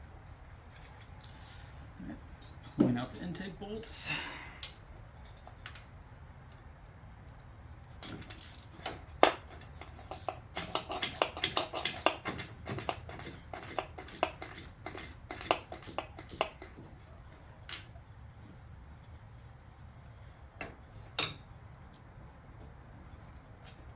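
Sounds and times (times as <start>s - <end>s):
ratchet clicking: 8.2s - 16.7s.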